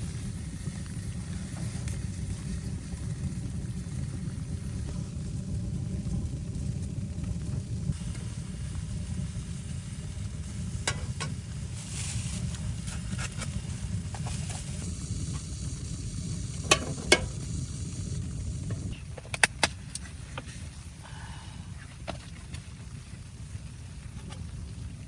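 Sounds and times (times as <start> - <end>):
low wind rumble: 0.0 - 11.8, 13.6 - 19.2
sharp crackles and clicks: 12.0 - 20.4.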